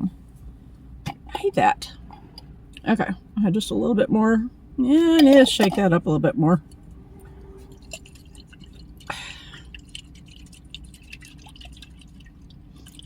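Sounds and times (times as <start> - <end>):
low hum: 0.0 - 13.0
liquid sloshing in bottle: 5.0 - 6.0, 7.4 - 13.0.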